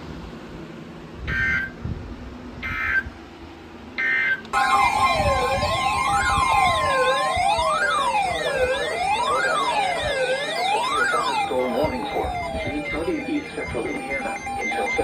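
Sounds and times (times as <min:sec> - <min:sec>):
wailing siren-like tones: 0:01.3 - 0:01.7, 0:04.0 - 0:15.0
buzzing digital data tones: 0:04.0 - 0:15.0
steady tone: 0:04.6 - 0:15.0.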